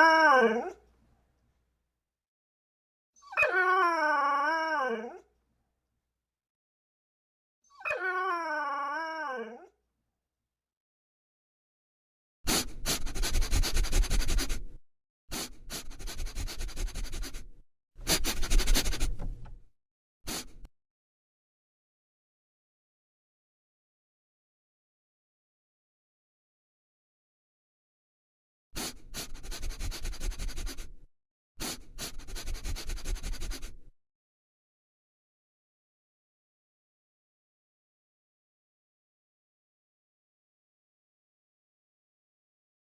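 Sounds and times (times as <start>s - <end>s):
rough scratching noise: 18.0s - 19.4s.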